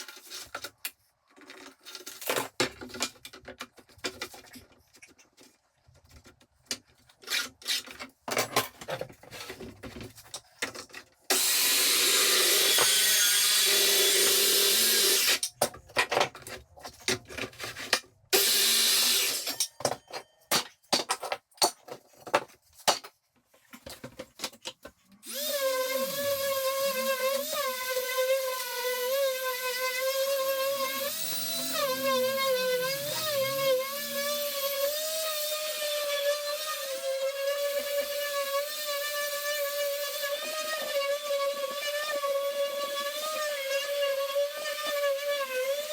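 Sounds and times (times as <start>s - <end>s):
power tool cutting wood: 11.3s - 15.5s, 18.3s - 19.7s, 25.2s - 45.9s.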